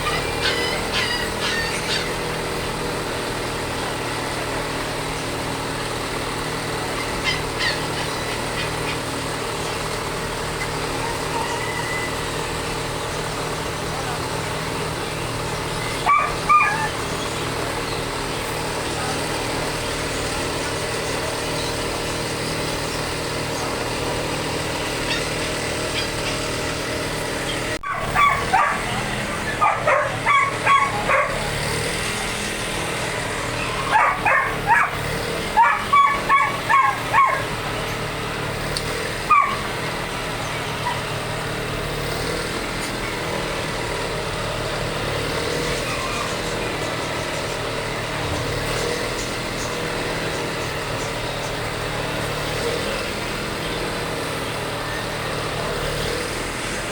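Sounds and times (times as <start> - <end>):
dog barking angrily: 0.0 - 3.7, 6.1 - 12.2, 15.7 - 17.1, 24.2 - 27.1, 27.8 - 37.9, 38.9 - 40.1
steady engine-like hum: 0.0 - 56.9.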